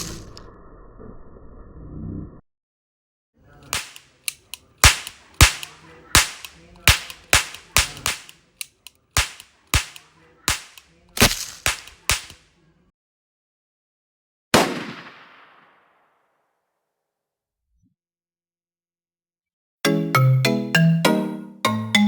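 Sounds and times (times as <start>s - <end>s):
gunshots: 0.0s - 0.4s, 3.7s - 12.5s, 14.5s - 16.1s.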